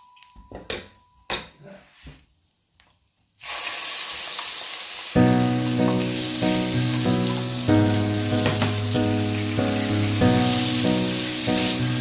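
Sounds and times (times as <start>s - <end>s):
food sizzling in hot oil: 3.4s - 12.0s
background music with held chords: 5.2s - 12.0s.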